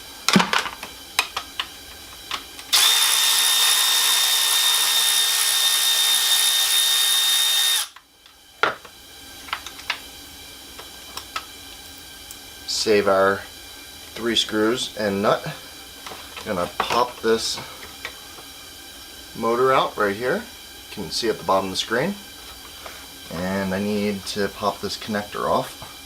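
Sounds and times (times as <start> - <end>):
clicks and knocks of parts: 0.3 - 2.7
power drill running: 0.8 - 8.0, 12.8 - 18.6.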